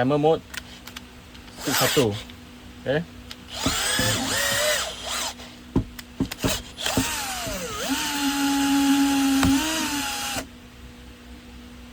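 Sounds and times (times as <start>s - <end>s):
drill motor running: 1.6s - 2.2s, 3.5s - 5.4s, 6.3s - 10.5s
drill clicks: 3.3s - 5.4s, 6.0s - 10.5s.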